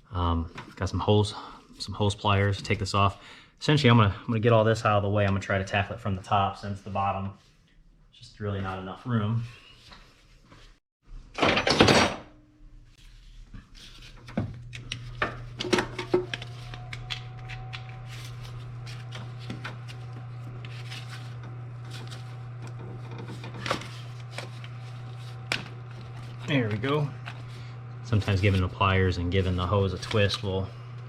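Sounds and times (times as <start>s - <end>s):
steady low hum: 13.2s - 31.0s.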